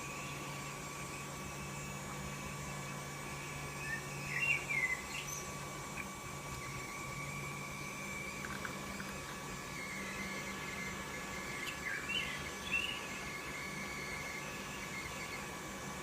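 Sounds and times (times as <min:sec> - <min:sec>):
thin high whine: 0:00.0 - 0:16.0
chirps: 0:03.7 - 0:06.1, 0:11.5 - 0:15.4.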